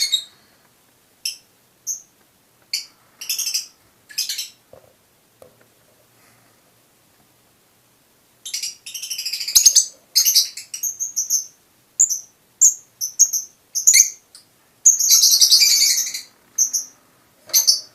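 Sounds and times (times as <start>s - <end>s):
lovebirds chirping and chattering: 0.0s - 0.4s, 1.2s - 2.1s, 2.7s - 4.6s, 8.4s - 17.9s.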